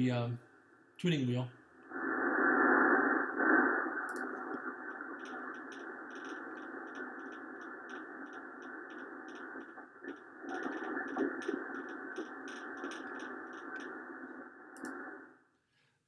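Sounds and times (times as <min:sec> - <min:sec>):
radio static hiss: 0:01.0 - 0:15.4
light irregular clicks: 0:04.0 - 0:15.2.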